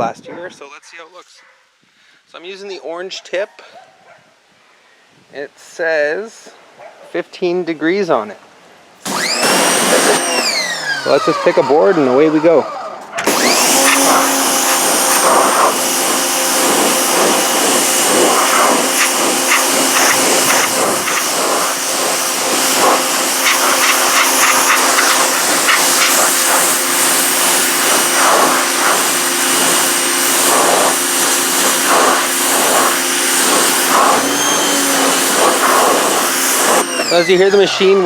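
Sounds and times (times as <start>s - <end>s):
water spray blasting wooden boards: 9.0s - 12.0s, 13.2s - 37.9s
pressure washer motor whining: 9.0s - 38.0s.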